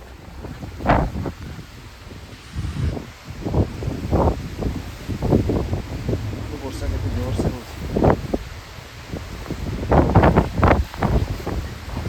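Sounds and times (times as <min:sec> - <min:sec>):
heavy rain hissing: 0:00.0 - 0:12.0
wind buffeting microphone: 0:00.0 - 0:12.0.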